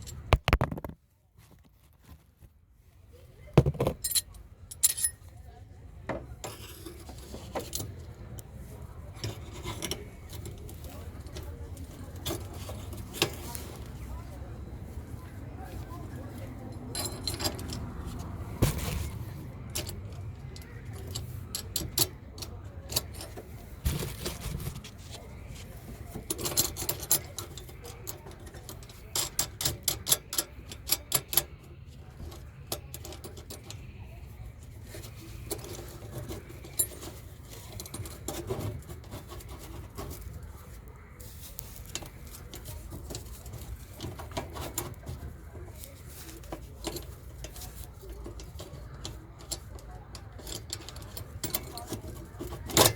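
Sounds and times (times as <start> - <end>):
metal hand tools clinking: 4.0 - 5.3, 16.5 - 24.4, 45.8 - 52.9.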